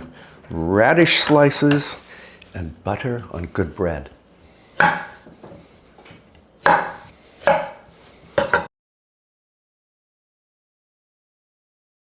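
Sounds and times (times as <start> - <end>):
knife chopping on cutting board: 4.8 - 8.7.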